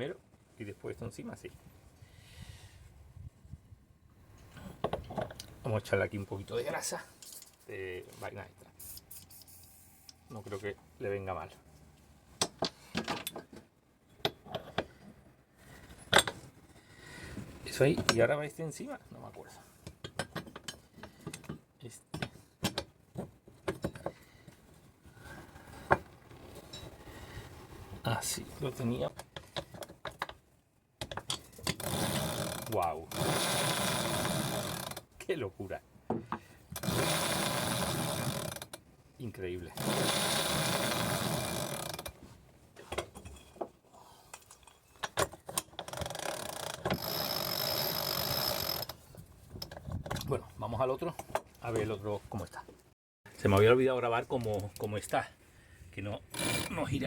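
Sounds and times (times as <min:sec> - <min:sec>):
winch parts clicking and knocking: 0:31.0 - 0:35.3, 0:36.1 - 0:38.9, 0:39.7 - 0:42.2, 0:42.8 - 0:50.3.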